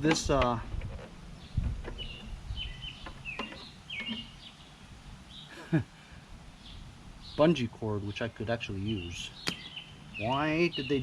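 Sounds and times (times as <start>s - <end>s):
sharp clicks and knocks: 0.0s - 2.3s, 3.0s - 4.3s
low outdoor rumble: 0.0s - 11.0s
small birds chirping: 0.0s - 11.0s.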